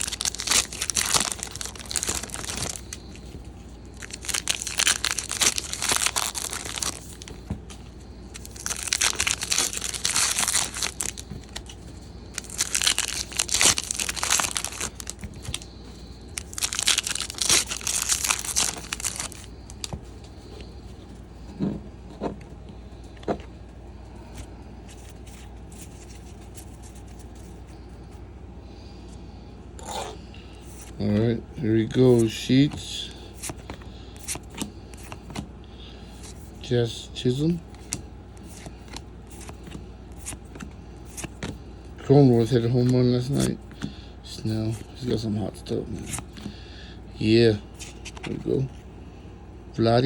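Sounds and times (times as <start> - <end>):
foil wrappers tearing and crinkling: 0.0 - 3.4, 4.0 - 7.5, 8.3 - 15.6, 16.3 - 19.9.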